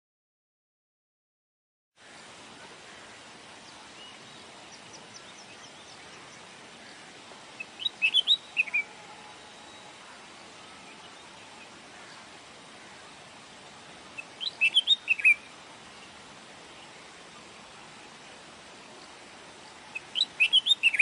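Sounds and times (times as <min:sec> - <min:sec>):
steady forest hiss: 0:02.0 - 0:21.0
high bird chirps: 0:07.6 - 0:08.9, 0:14.2 - 0:15.4, 0:19.9 - 0:21.0.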